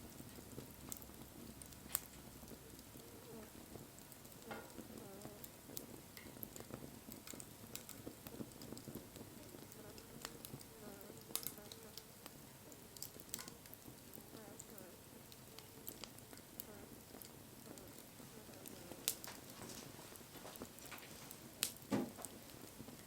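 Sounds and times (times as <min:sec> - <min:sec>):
soft hiss: 0:00.0 - 0:23.0
wood fire crackling: 0:00.0 - 0:23.0.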